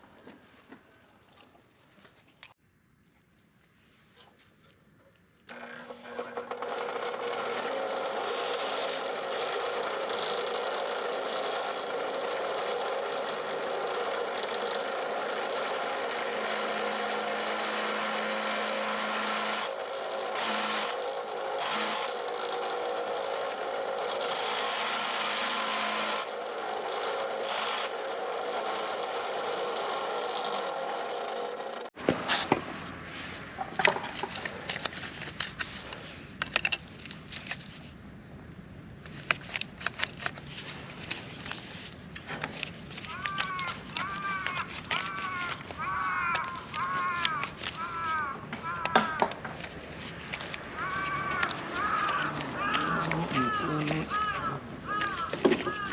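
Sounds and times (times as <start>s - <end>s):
power tool grinding metal: 5.5s - 31.9s.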